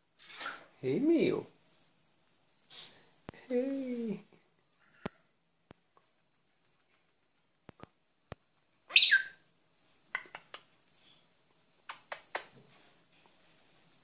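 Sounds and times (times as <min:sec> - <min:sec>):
parrot sharp chirps: 0:08.9 - 0:09.4
faint clicks: 0:11.8 - 0:12.6.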